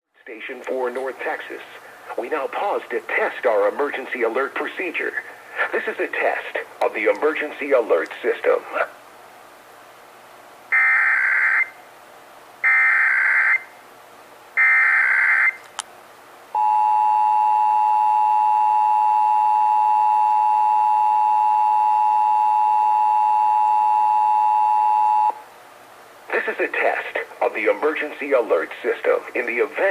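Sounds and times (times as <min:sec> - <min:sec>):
steady two-tone attention signal: 0:16.6 - 0:25.4.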